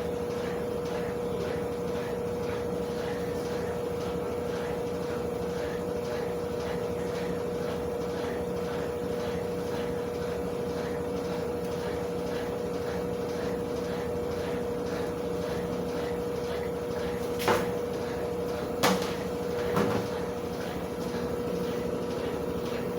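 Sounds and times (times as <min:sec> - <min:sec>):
washing machine motor hum: 0:00.0 - 0:22.9.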